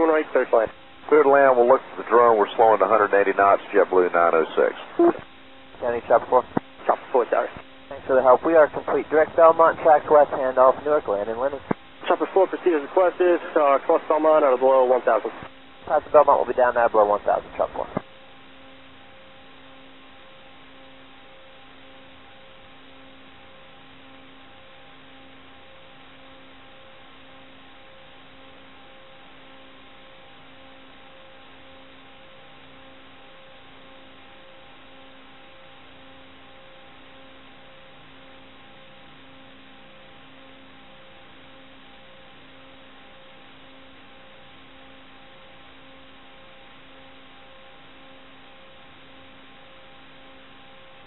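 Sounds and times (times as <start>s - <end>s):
radio static: 0.0s - 18.1s
faint pulsing low hum: 0.0s - 51.0s
faint steady tones: 0.0s - 51.0s.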